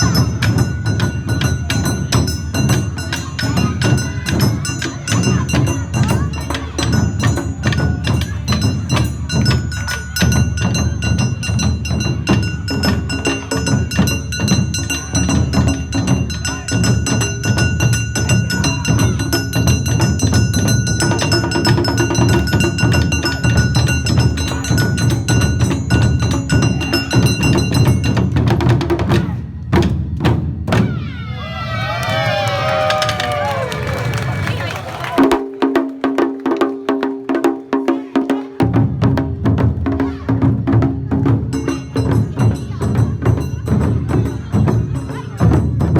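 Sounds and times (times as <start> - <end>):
metal bell strikes: 0.0 - 28.5, 41.5 - 45.9
drums beating fast: 0.0 - 45.9.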